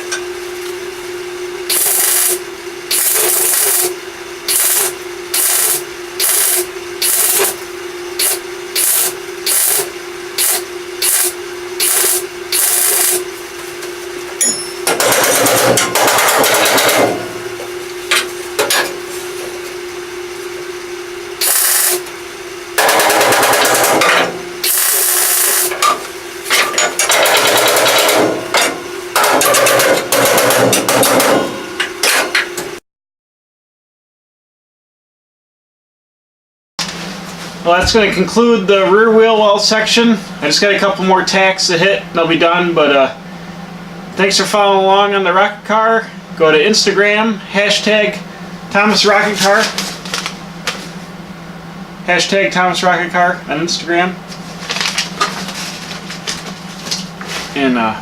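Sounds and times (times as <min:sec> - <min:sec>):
machine hum: 0:00.0 - 0:32.8, 0:36.8 - 0:58.0
welder crackling: 0:01.7 - 0:02.4, 0:04.5 - 0:07.6, 0:08.2 - 0:13.2.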